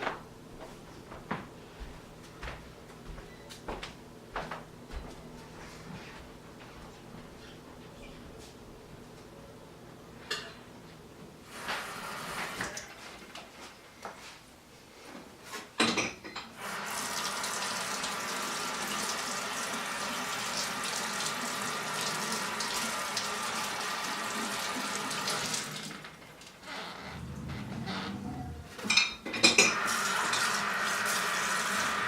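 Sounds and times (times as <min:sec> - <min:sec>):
dishes clinking and knocking: 0:15.8 - 0:16.5, 0:27.2 - 0:29.8
tap water running into sink: 0:16.6 - 0:26.1, 0:29.5 - 0:32.0.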